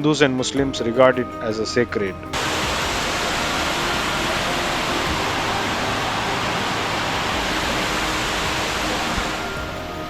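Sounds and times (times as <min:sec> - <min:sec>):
waterfall rushing: 0:02.4 - 0:10.0.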